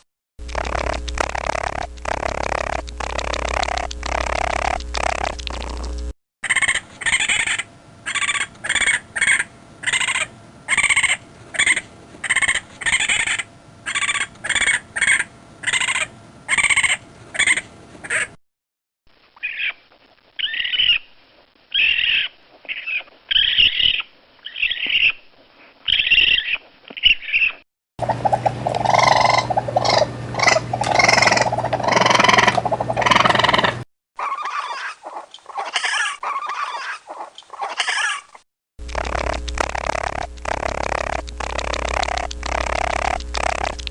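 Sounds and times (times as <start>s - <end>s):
low hum: 0.4s - 6.2s, 38.8s - 43.9s
raccoon screaming: 6.5s - 18.3s, 19.4s - 19.8s, 20.4s - 21.0s, 21.7s - 25.1s, 28.7s - 38.4s.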